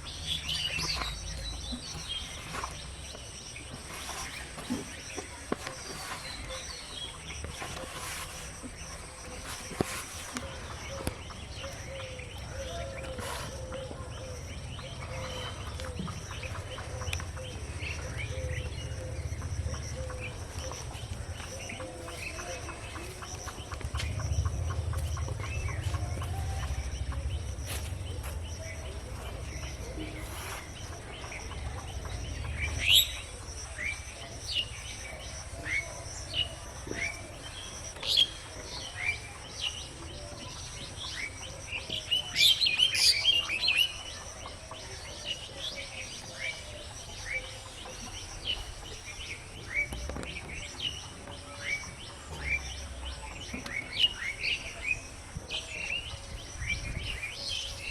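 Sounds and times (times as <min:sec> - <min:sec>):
birds chirping: 0:00.0 - 0:57.9
low rumble: 0:14.0 - 0:34.1.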